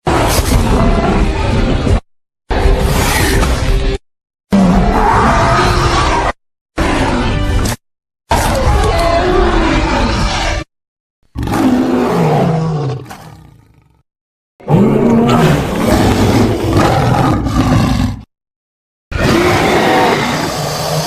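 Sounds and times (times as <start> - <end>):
dinosaur roars: 0.0 - 2.0, 4.5 - 7.5, 8.3 - 10.7, 11.4 - 14.0, 14.6 - 18.3, 19.1 - 21.0.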